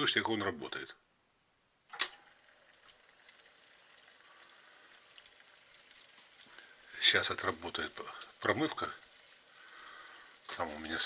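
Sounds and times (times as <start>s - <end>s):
sharp click: 1.9s - 2.2s
water hissing through filter: 2.6s - 11.0s.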